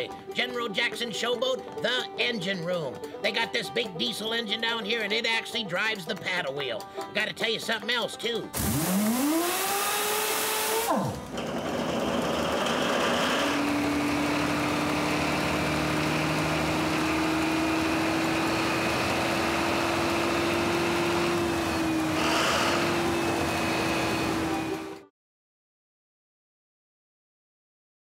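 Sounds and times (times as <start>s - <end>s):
large diesel engine running: 8.6s - 25.0s.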